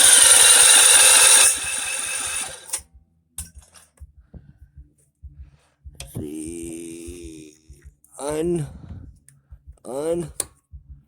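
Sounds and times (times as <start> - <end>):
electric starter cranking engine: 0.0 - 2.8.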